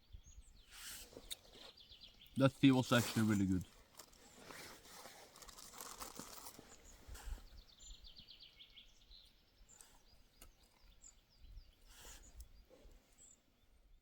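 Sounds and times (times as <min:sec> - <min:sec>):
songbird singing: 0:00.0 - 0:14.0.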